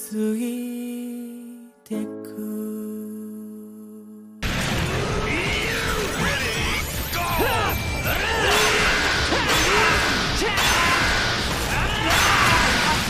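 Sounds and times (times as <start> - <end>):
music: 0.0 - 13.0
crashes and impacts: 4.4 - 7.2, 8.2 - 13.0.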